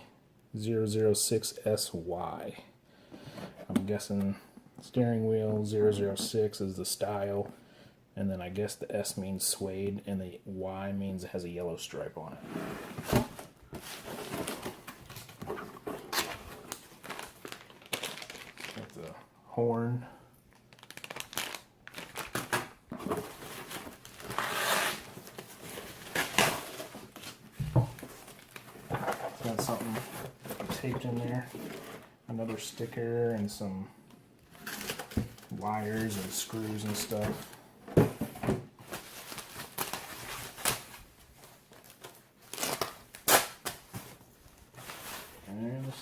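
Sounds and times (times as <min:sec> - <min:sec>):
packaging rustling and crinkling: 0:12.9 - 0:19.2, 0:20.5 - 0:32.1, 0:34.5 - 0:46.0
packaging rustling and clicking: 0:13.0 - 0:19.1
packaging crinkle: 0:16.0 - 0:19.2, 0:20.5 - 0:27.4.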